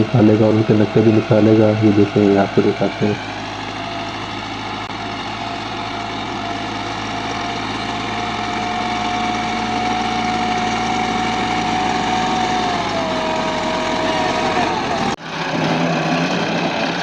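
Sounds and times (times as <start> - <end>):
steady whining tone: 0.0 - 17.0
tractor engine running: 0.0 - 17.0.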